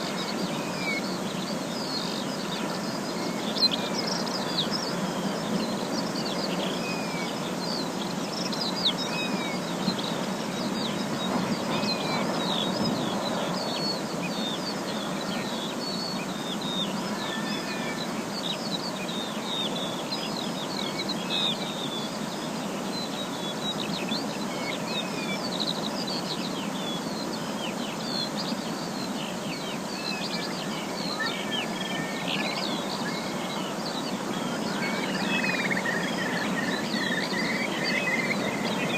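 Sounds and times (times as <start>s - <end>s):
birds chirping and whistling: 28.0s - 38.9s.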